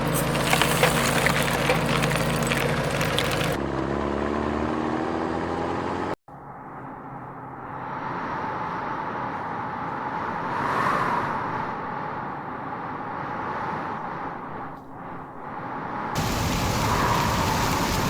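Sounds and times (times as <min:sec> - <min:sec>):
heavy truck engine running: 0:00.0 - 0:03.6, 0:16.2 - 0:18.0
rushing noise: 0:16.2 - 0:18.0.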